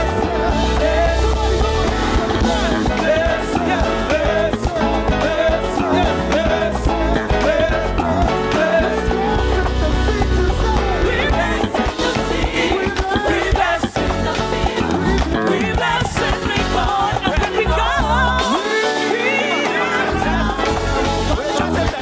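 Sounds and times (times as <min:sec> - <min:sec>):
choir singing: 0:00.0 - 0:22.0
live band playing: 0:00.0 - 0:22.0.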